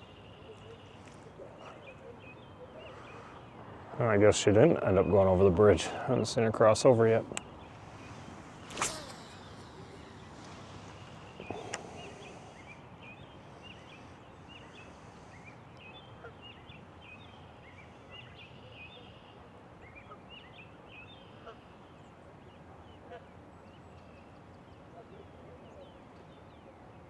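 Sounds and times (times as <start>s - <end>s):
outdoor background hiss: 0.0s - 18.7s
small birds chirping: 0.0s - 19.2s
sharp click: 7.3s - 12.4s.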